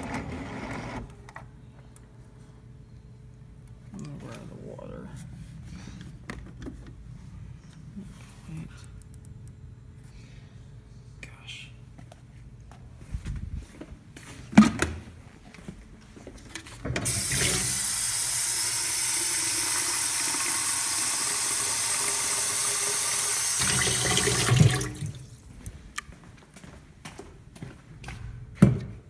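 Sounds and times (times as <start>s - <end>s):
water running from a tap: 17.0s - 25.5s.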